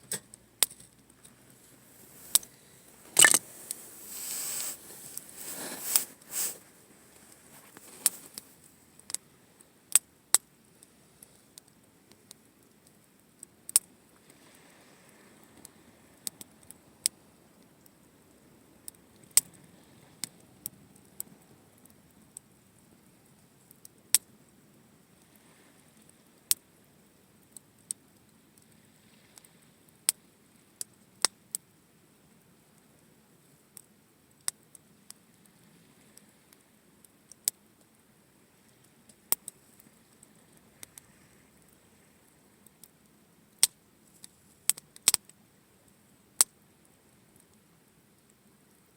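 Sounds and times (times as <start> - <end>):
campfire crackling: 0.6 - 9.3
rustling burst: 1.7 - 8.7.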